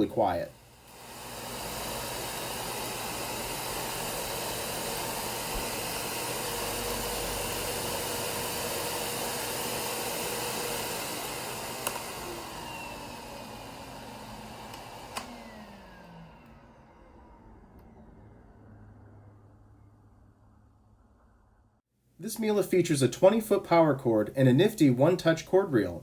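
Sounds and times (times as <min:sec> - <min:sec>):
vacuum cleaner motor running: 0:00.0 - 0:18.4
click: 0:11.8 - 0:12.1, 0:14.7 - 0:15.4.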